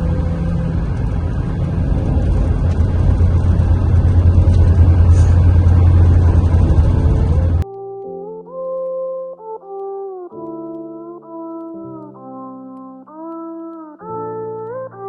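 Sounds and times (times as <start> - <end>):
road noise: 0.0 - 7.6
truck diesel engine drone: 0.0 - 7.6.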